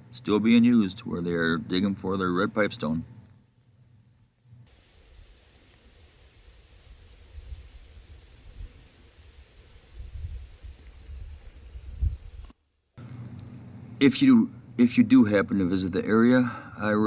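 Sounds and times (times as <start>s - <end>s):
insects trilling: 4.7s - 13.1s.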